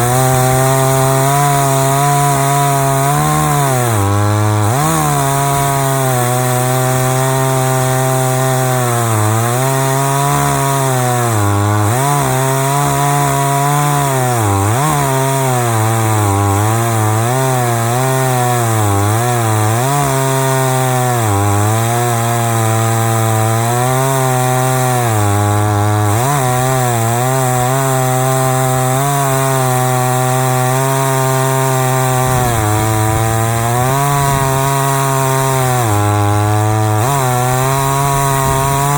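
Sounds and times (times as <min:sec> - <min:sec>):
chainsaw cutting log: 0:00.0 - 0:38.9.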